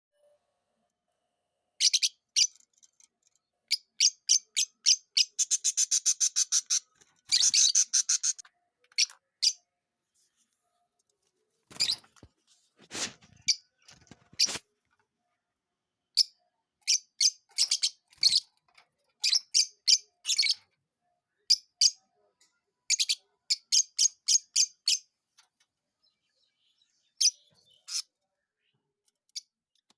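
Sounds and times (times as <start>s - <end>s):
lovebirds chirping: 1.8s - 10.6s, 11.7s - 14.6s, 16.2s - 20.7s, 25.9s - 29.6s.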